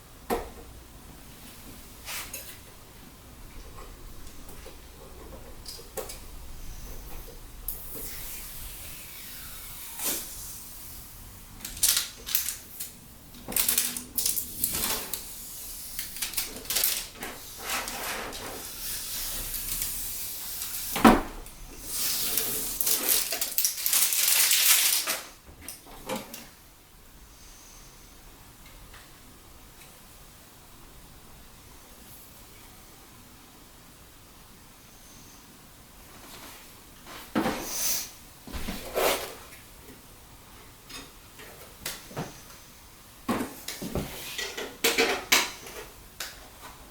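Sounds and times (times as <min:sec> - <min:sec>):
plastic packaging rustling: 0:11.6 - 0:15.4, 0:16.0 - 0:21.0, 0:21.8 - 0:25.4.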